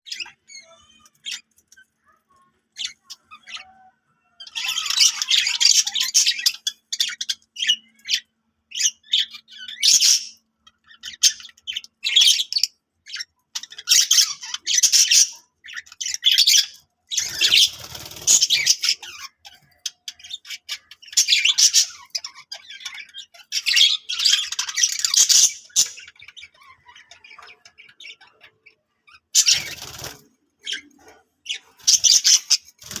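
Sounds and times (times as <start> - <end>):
budgie chirping and warbling: 0.1 - 33.0.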